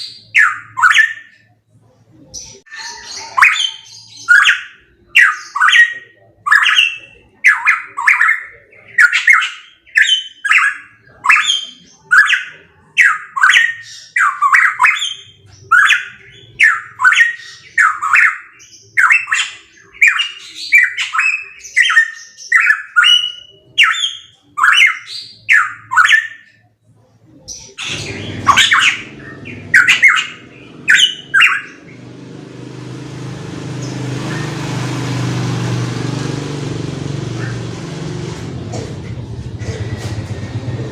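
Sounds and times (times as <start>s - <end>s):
bird giving harsh calls: 27.7s - 36.6s.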